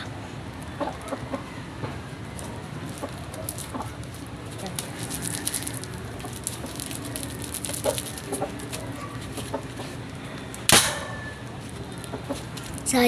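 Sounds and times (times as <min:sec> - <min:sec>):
chickens clucking: 0:00.6 - 0:10.4
pipe cannon bang: 0:10.7 - 0:11.3.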